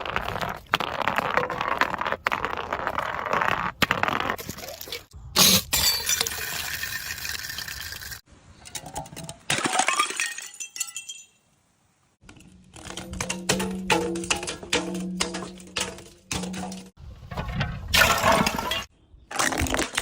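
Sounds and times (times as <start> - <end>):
glass clinking and breaking: 9.5 - 11.4.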